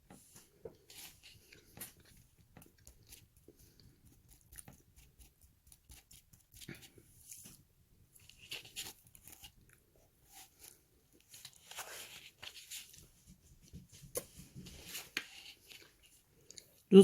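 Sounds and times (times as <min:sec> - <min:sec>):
person chewing: 0:15.7 - 0:16.8.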